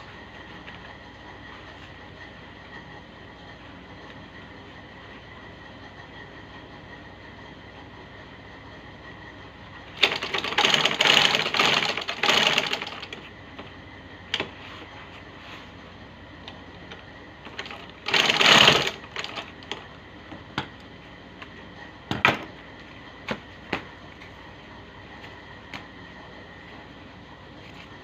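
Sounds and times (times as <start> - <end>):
sewing machine stitching: 10.0 - 13.2, 17.5 - 19.8.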